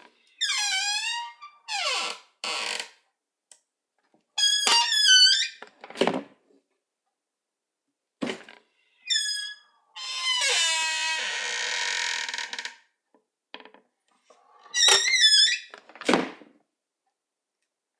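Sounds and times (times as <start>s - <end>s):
cabinet door hinges squeaking: 4.4s - 5.6s, 14.7s - 15.8s.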